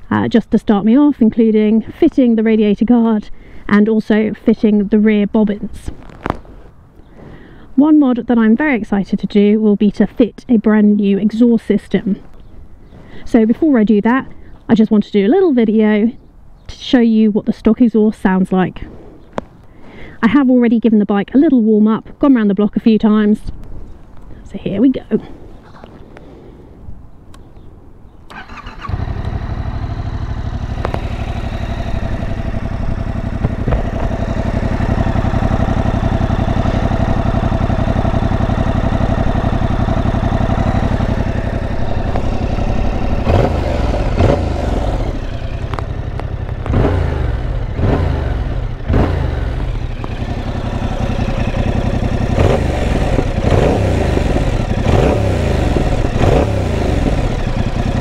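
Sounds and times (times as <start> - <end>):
motorcycle engine idling and revving: 0.0 - 16.2, 28.3 - 58.0
motorcycle engine cranking: 28.3 - 58.0.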